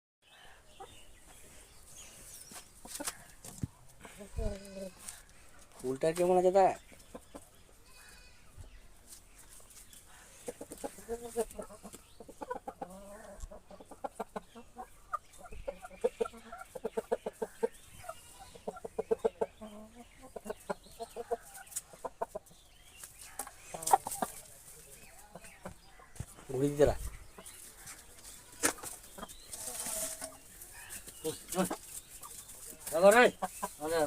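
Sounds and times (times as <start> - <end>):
chickens clucking: 0.3 - 34.0.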